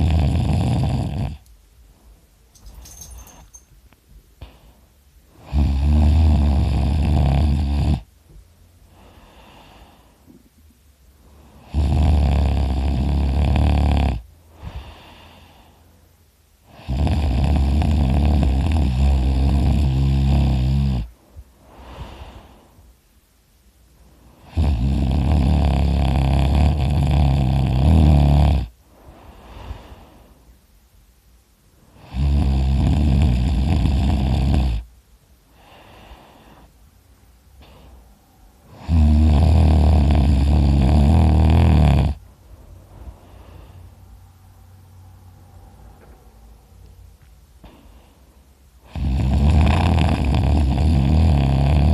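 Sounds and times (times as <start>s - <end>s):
person snoring loudly: 0.0s - 1.4s, 5.4s - 8.1s, 11.6s - 15.4s, 16.7s - 21.1s, 24.4s - 28.7s, 32.0s - 34.9s, 38.7s - 42.2s, 48.8s - 51.9s
soft breathing out: 21.2s - 23.0s, 28.8s - 30.6s, 35.5s - 36.8s, 37.5s - 38.3s, 42.4s - 44.5s, 47.6s - 48.5s.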